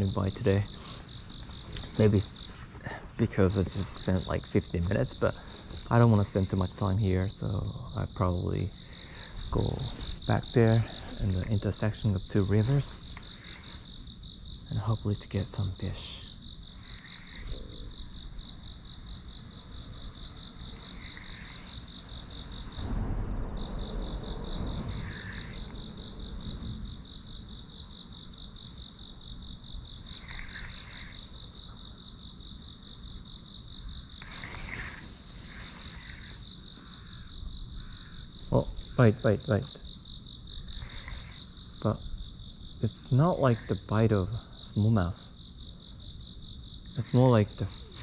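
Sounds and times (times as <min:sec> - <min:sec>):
insect trilling high pitch: 0:00.0 - 0:48.0
short insect calls: 0:00.0 - 0:48.0
low rumble: 0:22.4 - 0:27.8.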